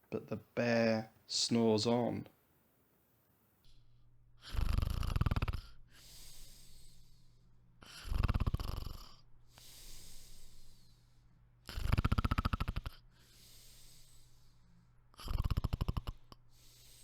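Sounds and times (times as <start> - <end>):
loud rattling snores: 4.4 - 6.9, 7.8 - 10.7, 11.7 - 14.0, 15.2 - 16.9
breathy exhale: 5.5 - 8.2, 9.5 - 11.9, 13.1 - 15.4, 16.4 - 17.0.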